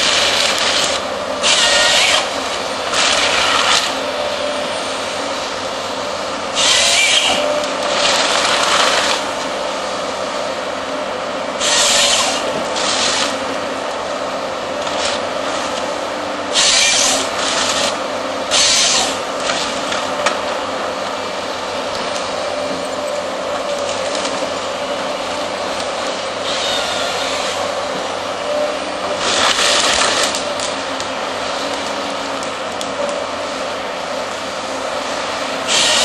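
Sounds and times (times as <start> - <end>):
excavator engine and hydraulics drone: 0.0 - 36.0
loud rasping of wood being cut: 0.8 - 4.0, 6.5 - 9.2, 11.6 - 13.4, 16.5 - 19.8, 26.4 - 27.7, 35.6 - 36.0.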